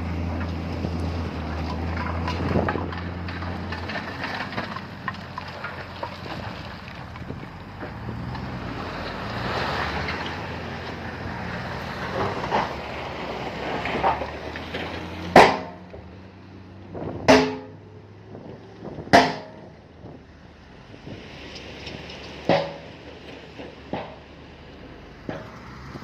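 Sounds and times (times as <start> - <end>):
heavy machinery rumbling: 0.0 - 26.0
loud metallic clangs: 15.3 - 15.9, 17.2 - 17.8, 19.1 - 19.8, 22.4 - 23.0.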